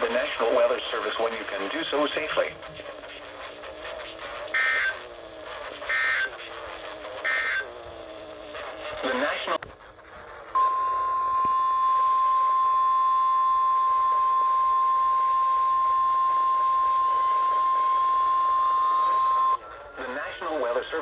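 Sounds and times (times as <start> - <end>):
steady loud alarm beep: 10.6 - 21.0
faint rising whistle: 10.7 - 21.0.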